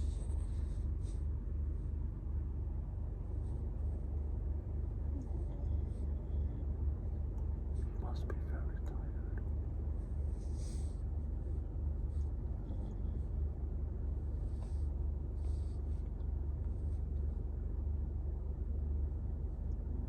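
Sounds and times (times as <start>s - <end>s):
dog snoring: 12.1s - 13.5s.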